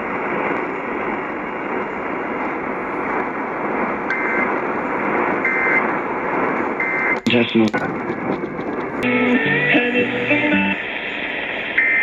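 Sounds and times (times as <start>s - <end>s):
radio static hiss: 7.2s - 12.0s.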